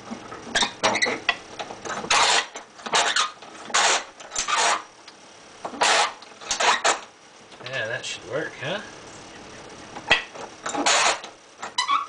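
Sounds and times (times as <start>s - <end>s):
metal scraping and rattling: 0.0s - 4.8s, 5.7s - 7.1s, 10.1s - 12.0s.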